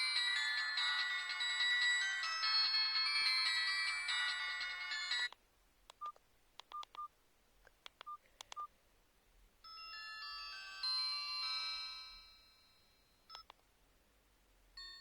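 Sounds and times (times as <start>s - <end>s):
polyphonic phone ringtone: 0.0s - 5.3s
keypad clicks: 5.3s - 7.1s, 7.8s - 8.7s, 13.3s - 13.6s.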